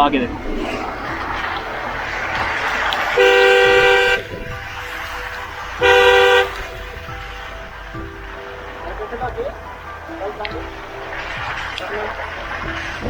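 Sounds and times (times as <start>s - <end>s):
background noise: 0.0s - 13.0s
vehicle horn honking: 3.0s - 4.6s, 5.8s - 7.0s.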